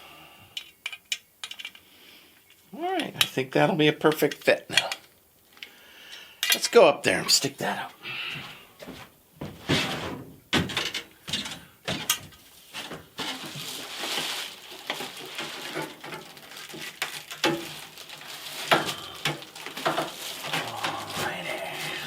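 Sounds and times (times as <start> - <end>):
handling noise: 8.8 - 22.0.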